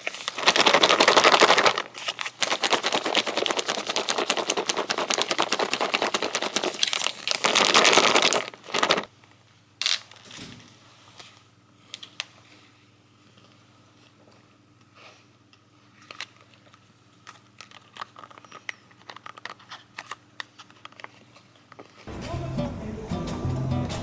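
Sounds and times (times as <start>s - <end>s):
crinkling and rustling: 0.0s - 9.1s, 15.9s - 22.1s.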